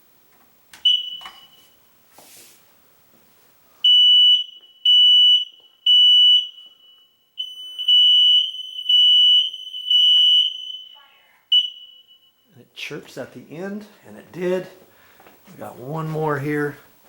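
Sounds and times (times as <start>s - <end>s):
smoke alarm shrill beeps: 0.8s - 1.8s, 3.8s - 12.6s
quieter alarm tone: 3.8s - 12.6s.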